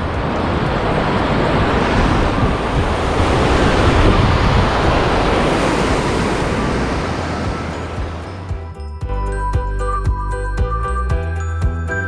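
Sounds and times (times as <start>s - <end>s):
wind buffeting microphone: 0.0s - 8.6s.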